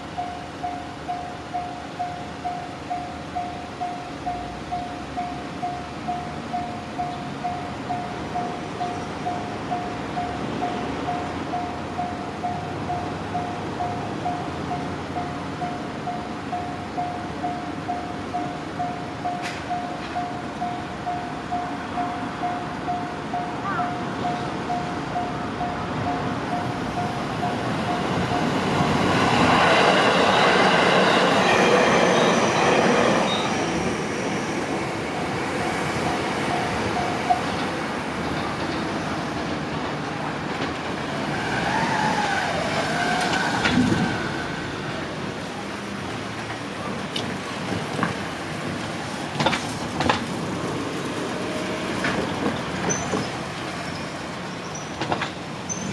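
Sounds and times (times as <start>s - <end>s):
level crossing warning bell: 0.0s - 39.5s
electric train passing on rails: 0.0s - 55.9s
faint high wheel squeal: 30.1s - 33.7s, 52.3s - 55.9s.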